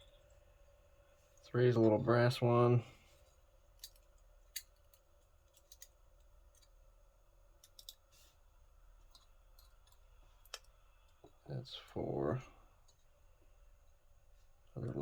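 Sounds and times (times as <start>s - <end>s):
small lock parts clicking: 3.7s - 6.8s, 7.6s - 8.1s, 9.0s - 11.2s.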